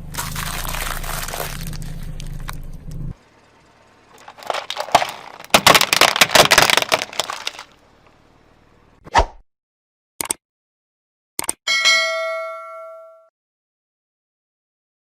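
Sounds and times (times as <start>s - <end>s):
things crunching under car tyre: 0.0s - 3.1s, 4.1s - 8.2s
low hum: 0.0s - 5.5s.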